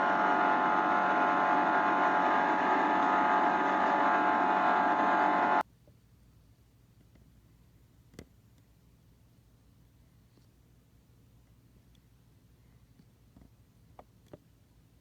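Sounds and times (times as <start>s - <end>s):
airliner drone in flight: 0.0s - 5.6s.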